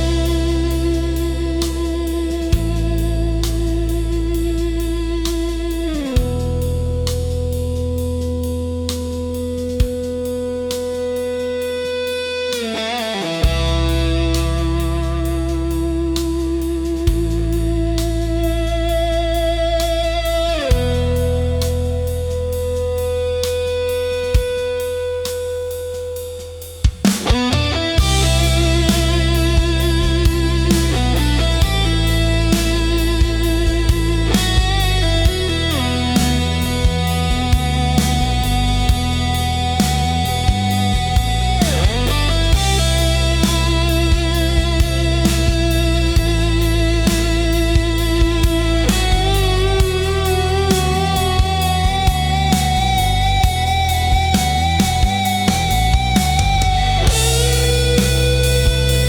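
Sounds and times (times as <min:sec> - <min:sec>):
slow bass line: 0:00.0 - 0:11.9, 0:13.4 - 0:26.5, 0:27.3 - 0:59.0
electric guitar notes: 0:00.0 - 0:26.2, 0:27.0 - 0:59.0
drum hits: 0:26.9 - 0:39.3, 0:47.2 - 0:59.0.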